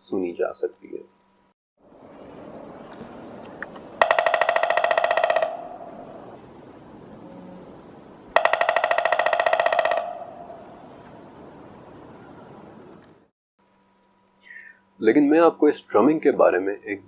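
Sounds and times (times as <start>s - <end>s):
woodpecker drumming on wood: 3.6s - 6.4s, 8.3s - 11.0s.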